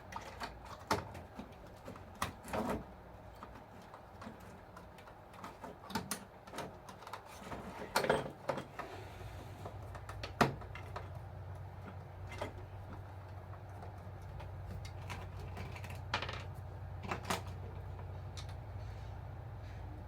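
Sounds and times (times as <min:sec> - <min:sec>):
sharp clicks and knocks: 0:09.6 - 0:18.6.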